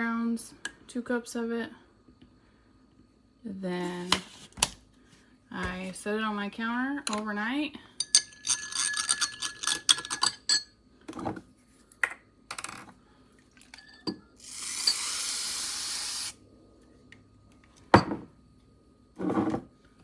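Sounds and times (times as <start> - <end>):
glass jar rattling clinks: 8.0 - 10.7.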